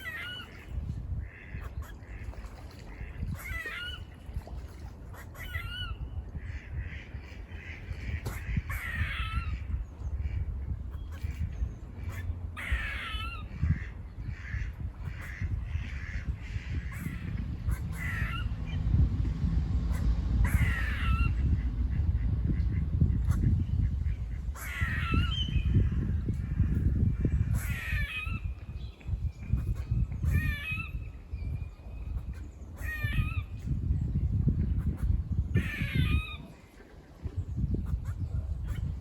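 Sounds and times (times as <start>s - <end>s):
low rumble: 15.5s - 27.6s
squirrel buzzy wavering calls: 29.7s - 31.1s.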